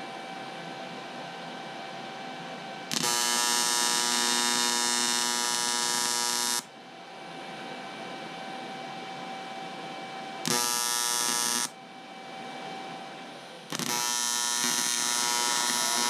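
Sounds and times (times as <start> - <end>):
welder electrical hum: 0.0 - 16.0
electric welding arc buzzing: 2.9 - 6.7, 10.5 - 11.8, 13.7 - 16.0.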